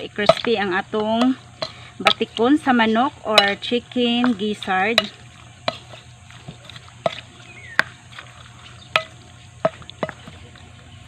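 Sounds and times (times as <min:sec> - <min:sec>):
utensil clinking against bowl: 0:08.9 - 0:10.6.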